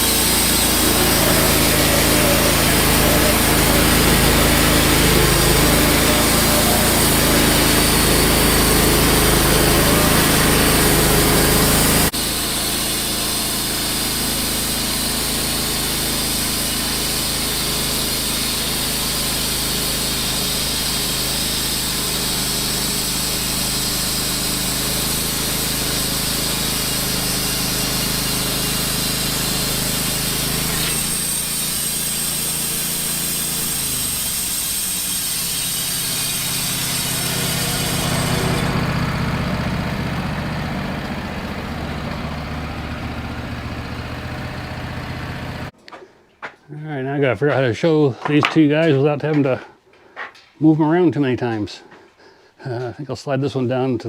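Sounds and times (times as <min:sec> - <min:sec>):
band sawmill cutting log: 0:00.0 - 0:45.8.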